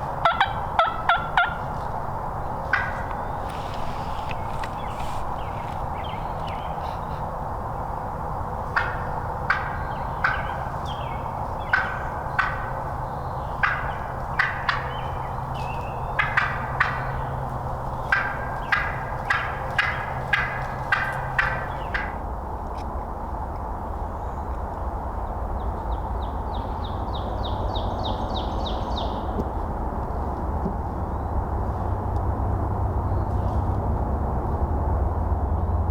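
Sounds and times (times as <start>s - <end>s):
sharp turkey calls: 0.0s - 2.0s, 2.6s - 5.8s, 8.6s - 22.4s.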